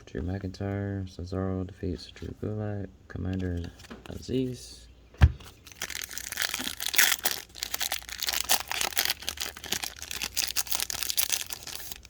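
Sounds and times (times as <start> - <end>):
foil wrapper crinkling and tearing: 5.6 - 12.0.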